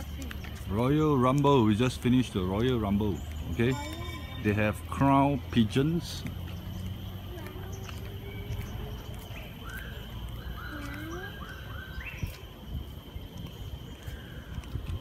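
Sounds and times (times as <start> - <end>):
bird chirps: 5.4 - 14.6.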